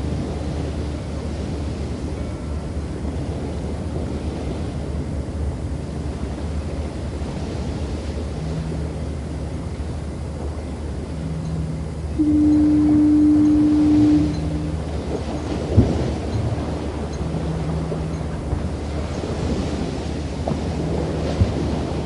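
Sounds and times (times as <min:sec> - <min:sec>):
surf: 0:00.0 - 0:22.0
wind: 0:00.0 - 0:22.0
faint low horn notes: 0:08.2 - 0:21.7
foghorn blast: 0:10.6 - 0:20.0.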